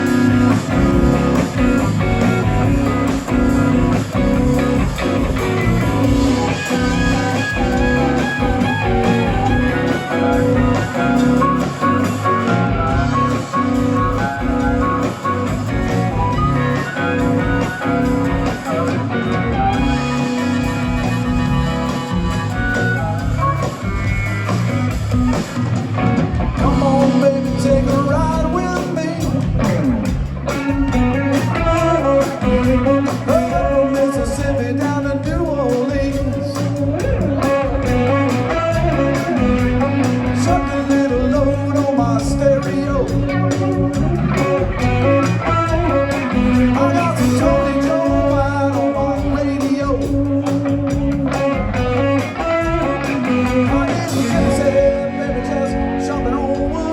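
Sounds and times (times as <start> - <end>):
blues-rock music: 0.0 - 56.9
person singing: 26.6 - 29.8, 31.1 - 37.6, 45.1 - 51.1, 52.4 - 56.9.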